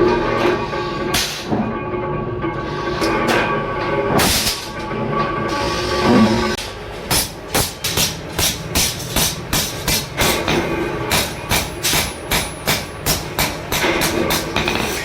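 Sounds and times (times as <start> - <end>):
hammer striking steel on anvil: 6.6 - 15.0.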